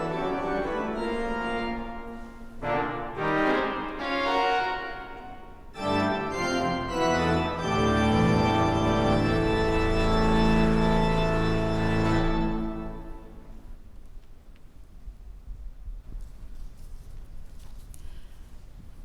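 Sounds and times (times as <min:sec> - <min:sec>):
organ playing chords: 0:00.0 - 0:13.6.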